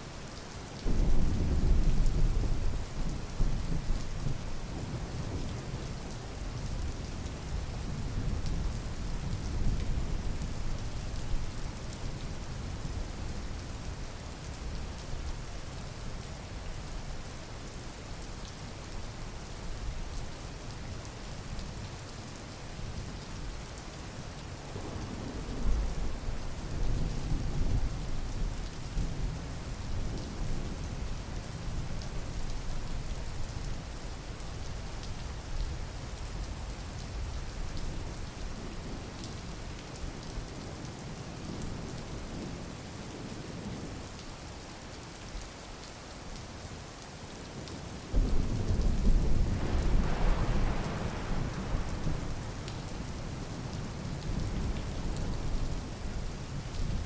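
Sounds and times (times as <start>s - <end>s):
steady rain: 0.0s - 57.0s
rumbling thunder: 48.1s - 55.8s.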